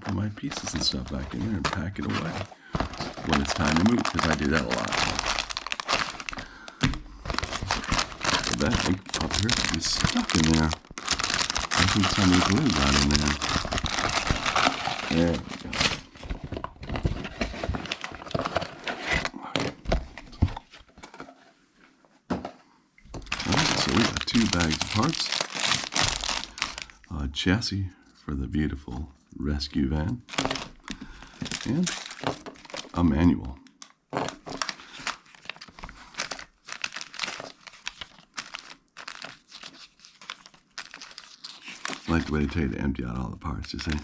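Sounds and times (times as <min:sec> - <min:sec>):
plastic bags of toy bricks rustling: 0:00.0 - 0:19.3, 0:23.2 - 0:27.0, 0:30.3 - 0:33.0, 0:34.2 - 0:42.7.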